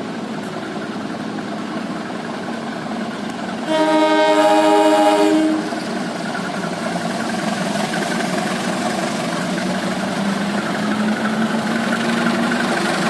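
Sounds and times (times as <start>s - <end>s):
engine running low: 0.0s - 13.0s
train horn blast: 3.6s - 5.8s.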